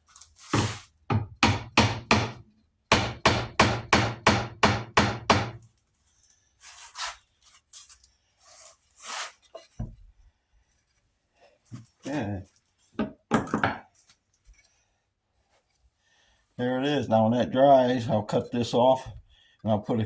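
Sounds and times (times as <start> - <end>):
hammer tapping wooden dowel: 1.1 - 5.6
handling and rubbing noises: 5.8 - 13.0.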